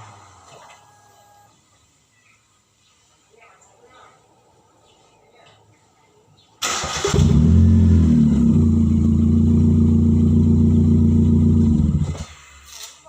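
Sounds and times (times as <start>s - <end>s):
car engine idling loudly: 7.3s - 12.2s.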